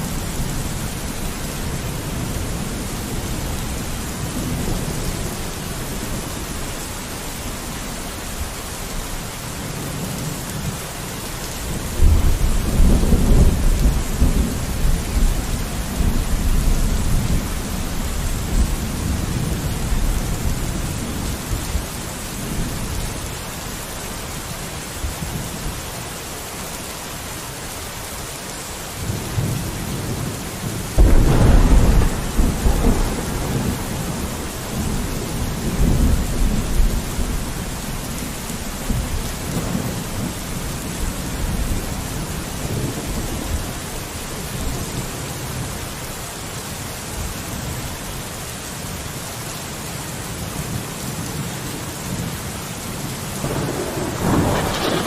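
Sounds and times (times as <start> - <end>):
rain on a window: 0.0 - 55.0
thunder rumbling: 11.8 - 22.8, 29.0 - 43.8, 53.4 - 55.0
loud thunder clap: 31.0 - 35.0, 53.4 - 55.0.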